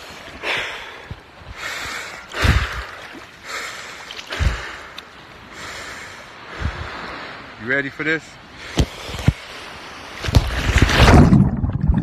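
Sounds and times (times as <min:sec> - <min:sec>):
man breathing heavily: 0:00.3 - 0:07.2, 0:08.5 - 0:09.6.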